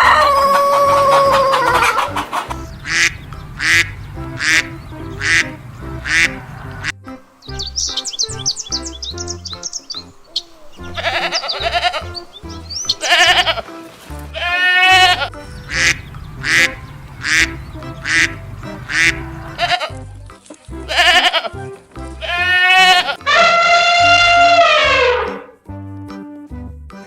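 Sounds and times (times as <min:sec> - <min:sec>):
background music with steady beat: 0:00.0 - 0:27.0
animal bleating: 0:10.2 - 0:13.7, 0:14.4 - 0:18.3, 0:18.9 - 0:20.0, 0:20.8 - 0:21.6, 0:22.2 - 0:25.5.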